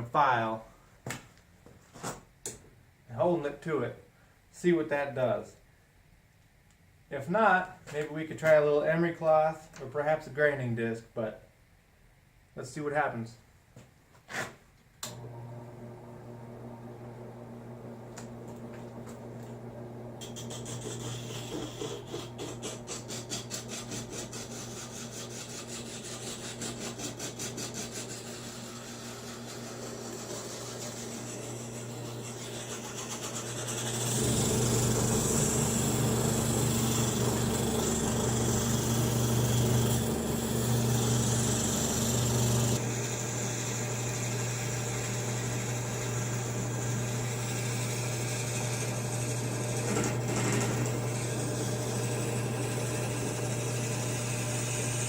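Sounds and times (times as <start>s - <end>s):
drill press motor running: 15.1s - 55.0s
file scraping spinning steel pin: 20.2s - 55.0s.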